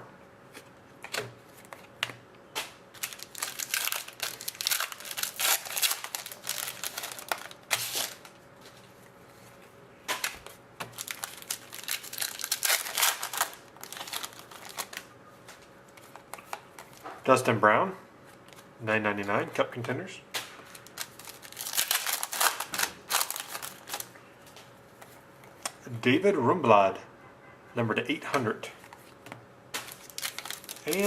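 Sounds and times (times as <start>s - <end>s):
wrappers crinkling and tearing: 2.9s - 8.9s, 10.2s - 17.1s, 20.6s - 24.1s, 29.8s - 31.0s.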